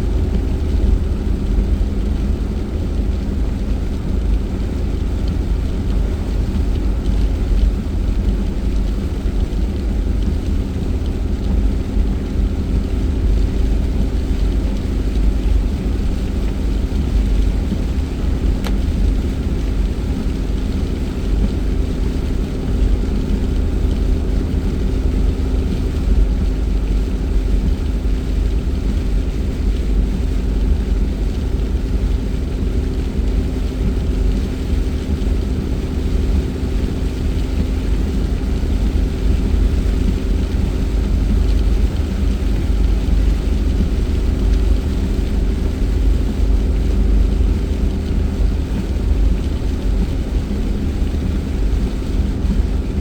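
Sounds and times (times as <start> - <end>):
car engine drone and road rumble: 0.0 - 53.0.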